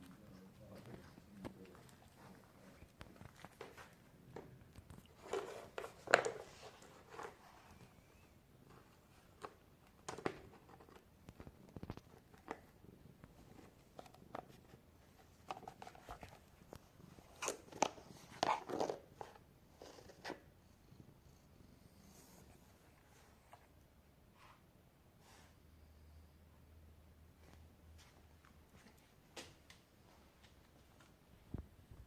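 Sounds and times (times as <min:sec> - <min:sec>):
pet crunching dry kibble: 0:00.0 - 0:07.8.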